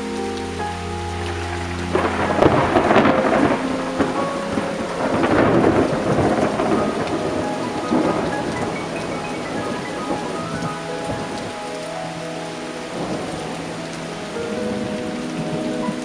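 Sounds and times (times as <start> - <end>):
heavy rainfall: 0.0 - 16.0
thunder rumbling: 0.0 - 16.0.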